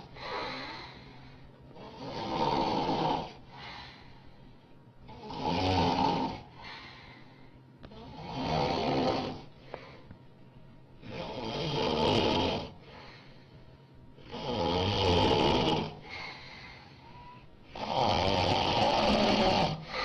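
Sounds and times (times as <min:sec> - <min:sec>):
quiet breathing: 0:00.0 - 0:20.0
woman snoring loudly: 0:01.8 - 0:03.4, 0:05.1 - 0:06.4, 0:07.9 - 0:09.5, 0:11.0 - 0:12.8, 0:14.2 - 0:16.2, 0:17.7 - 0:20.0.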